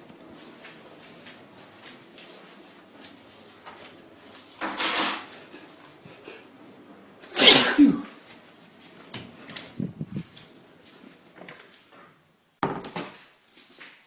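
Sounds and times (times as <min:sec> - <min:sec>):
man sneezing: 0:07.4 - 0:08.1.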